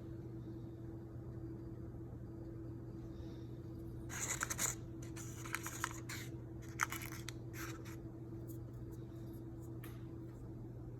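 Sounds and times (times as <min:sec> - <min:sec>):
steady low hum: 0:00.0 - 0:10.9
pie crust crunching: 0:04.1 - 0:08.6.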